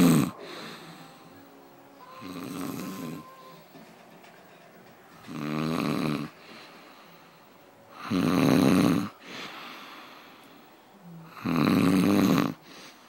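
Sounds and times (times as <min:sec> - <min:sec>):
person snoring: 0:00.0 - 0:01.4, 0:02.2 - 0:03.2, 0:05.3 - 0:06.6, 0:07.9 - 0:10.4, 0:11.0 - 0:13.0
quiet breathing: 0:00.0 - 0:03.8, 0:06.1 - 0:08.2, 0:09.0 - 0:13.0.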